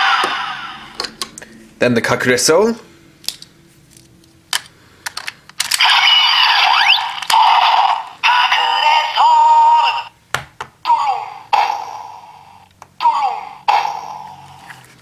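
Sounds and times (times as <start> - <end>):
plastic toy clicks: 4.6 - 6.0
toy electronic sound effects: 5.7 - 10.1, 10.9 - 14.7
recorded voice from toy speaker: 5.8 - 10.2, 10.9 - 12.4, 13.0 - 14.4.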